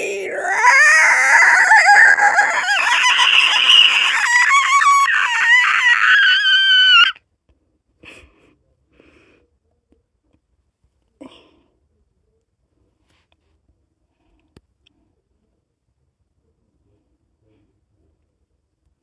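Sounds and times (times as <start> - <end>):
person making creature screech: 0.0 - 7.2.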